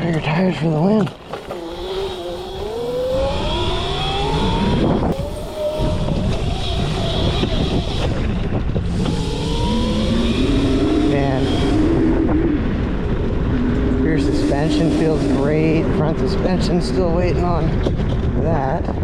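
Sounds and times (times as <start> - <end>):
electric motor whining: 1.3 - 15.9
low rumble: 1.3 - 19.0.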